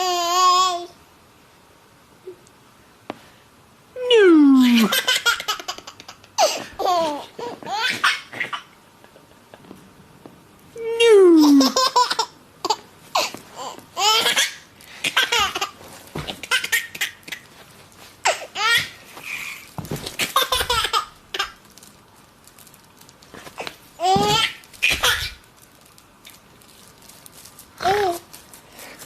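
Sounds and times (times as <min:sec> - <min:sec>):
baby laughing: 0:04.7 - 0:08.7, 0:11.4 - 0:15.8, 0:16.4 - 0:17.4, 0:20.2 - 0:21.6, 0:24.0 - 0:25.4.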